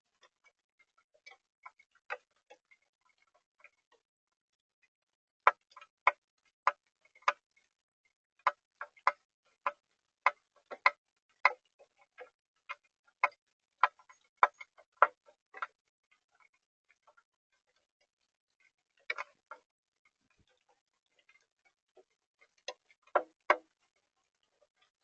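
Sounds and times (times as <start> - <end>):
water dripping: 5.5 - 25.0.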